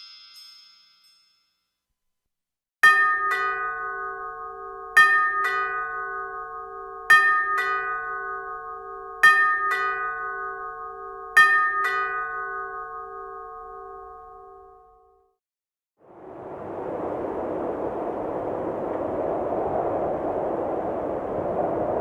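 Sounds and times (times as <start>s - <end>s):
two-tone doorbell chime: 2.8s - 15.2s.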